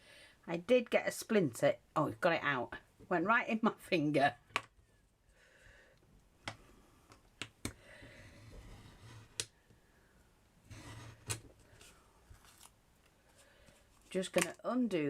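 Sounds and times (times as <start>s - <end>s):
soft rustling: 10.8s - 14.3s.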